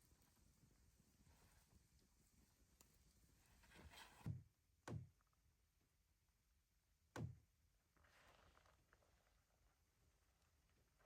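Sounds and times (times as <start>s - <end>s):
soft rustle: 0.0s - 4.3s, 7.9s - 11.0s.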